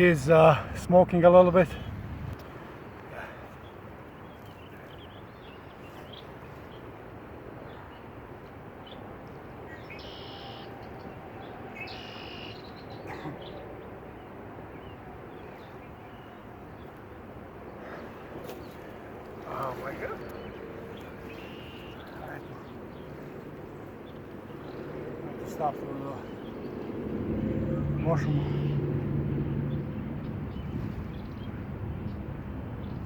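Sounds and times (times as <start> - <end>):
outdoor background noise: 0.0 - 33.0
short bird calls: 9.6 - 13.7, 19.5 - 23.3, 28.0 - 28.8.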